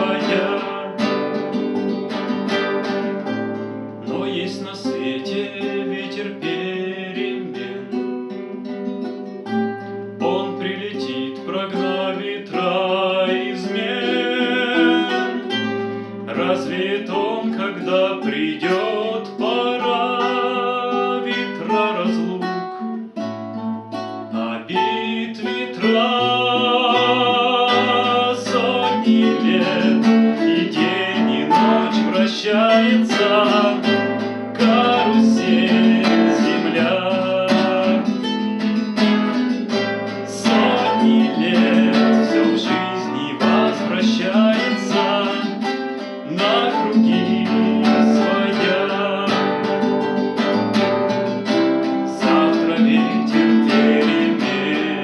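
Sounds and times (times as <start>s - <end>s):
acoustic guitar playing: 0.0s - 55.0s.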